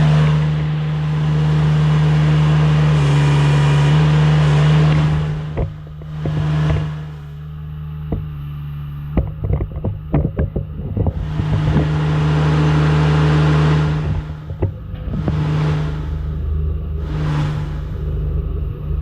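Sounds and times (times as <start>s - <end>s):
excavator diesel engine running: 0.0s - 19.0s
clanks and knocks: 4.6s - 18.3s.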